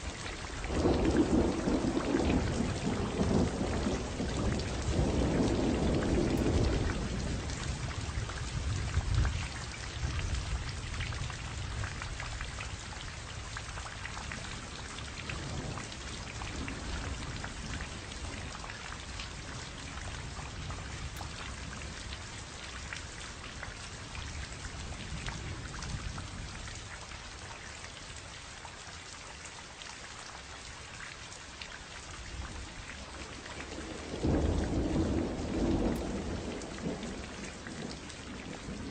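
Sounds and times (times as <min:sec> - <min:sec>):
thunder rumbling: 0:00.6 - 0:10.4, 0:33.7 - 0:38.9.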